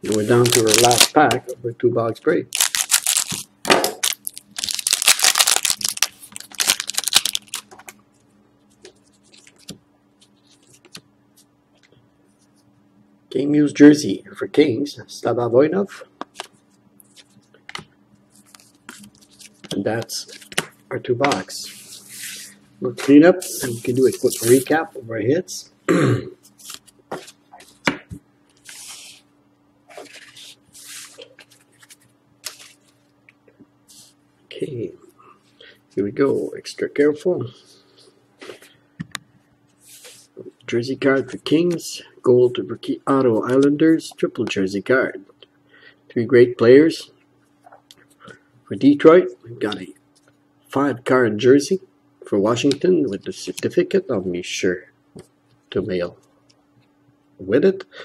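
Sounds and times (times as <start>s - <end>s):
foil wrapper tearing and crinkling: 0.0s - 1.3s, 2.5s - 7.7s
faint electrical hum: 0.0s - 58.0s.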